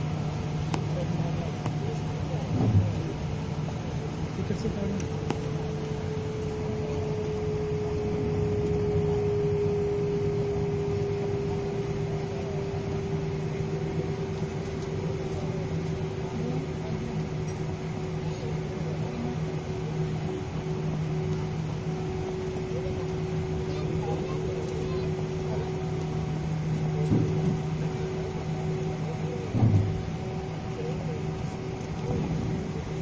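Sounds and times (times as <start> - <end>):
jet engines droning in cabin: 0.0 - 33.0.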